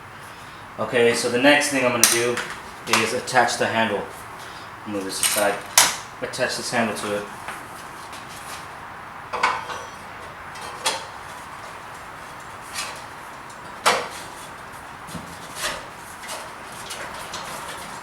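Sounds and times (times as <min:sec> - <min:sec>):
metallic clanks and knocks: 0:09.3 - 0:11.1.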